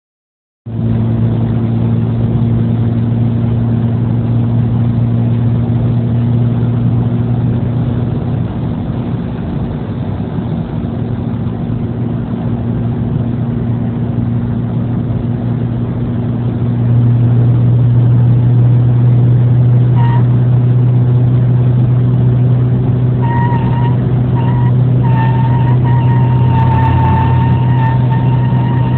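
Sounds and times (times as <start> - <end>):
car engine drone: 0.7 - 28.9
road noise: 0.7 - 28.9
high-pitched screaming whine: 23.2 - 28.9.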